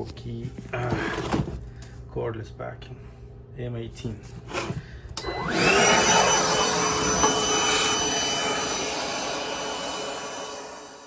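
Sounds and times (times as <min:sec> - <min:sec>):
cordless vacuum running: 0:05.2 - 0:11.0.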